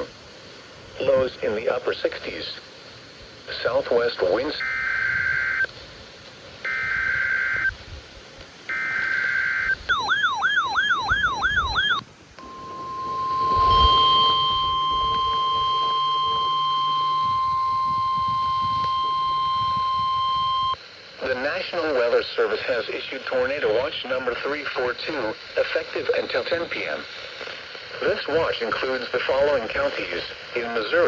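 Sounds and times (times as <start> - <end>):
steady warning tone: 6.6 - 7.8, 8.7 - 20.8
buzzy data bursts: 6.6 - 8.0, 8.7 - 20.9
higher steady tone: 8.7 - 20.8
warbling siren-like tone: 8.7 - 20.8.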